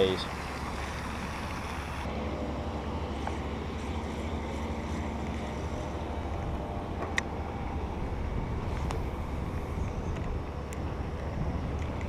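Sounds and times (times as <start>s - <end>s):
wind on microphone: 4.0s - 12.0s.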